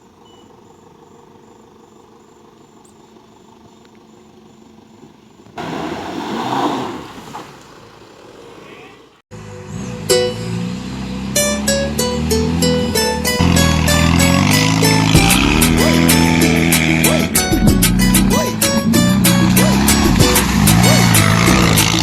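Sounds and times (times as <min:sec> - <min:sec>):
faint outdoor background: 0:00.0 - 0:05.8
vehicle driving past: 0:05.6 - 0:12.8
plucked guitar music: 0:11.4 - 0:22.0.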